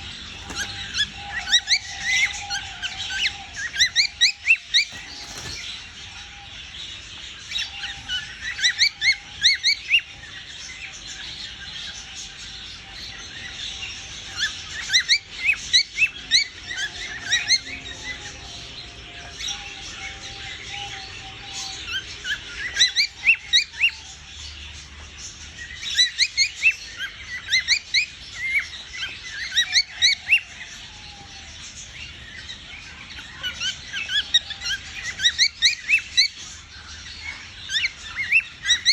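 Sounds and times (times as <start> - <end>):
cockatiel chirping: 0.3 - 5.6, 7.4 - 12.0, 25.8 - 30.7, 32.0 - 38.9.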